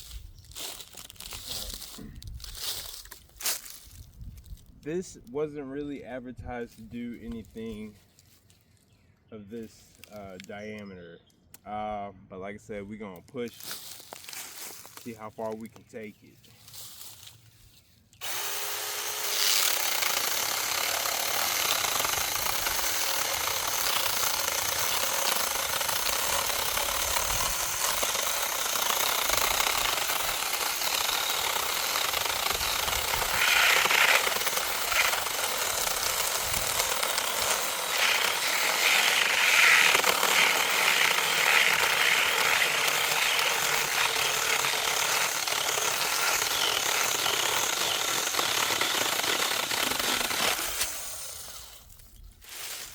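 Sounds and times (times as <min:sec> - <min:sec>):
mini chainsaw cutting wood: 0:18.2 - 0:52.9.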